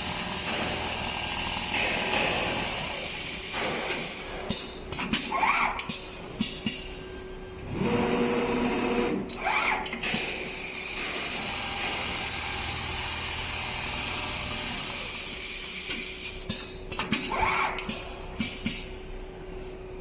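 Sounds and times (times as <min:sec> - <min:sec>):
sewing machine hiss and hum: 0:00.0 - 0:04.8, 0:10.1 - 0:16.6.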